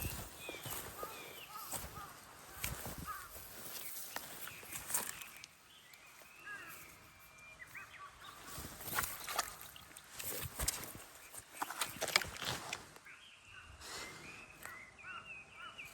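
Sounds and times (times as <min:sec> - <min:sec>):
vegetation rustling and crackling: 0:00.0 - 0:07.0, 0:07.6 - 0:13.1
faint high chirping calls: 0:00.0 - 0:15.9.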